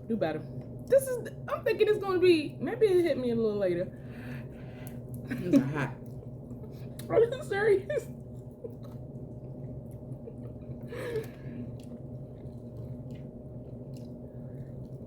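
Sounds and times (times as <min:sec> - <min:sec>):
steady low hum: 0:00.0 - 0:15.0
chewing with wet clicks: 0:06.0 - 0:07.2, 0:08.2 - 0:15.0.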